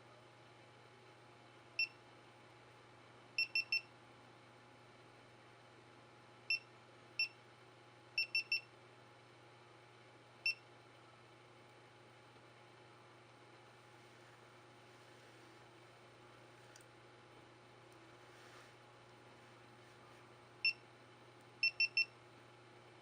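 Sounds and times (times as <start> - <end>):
short electronic camera beeps: 3.4 - 3.8, 8.2 - 8.6, 21.6 - 22.1.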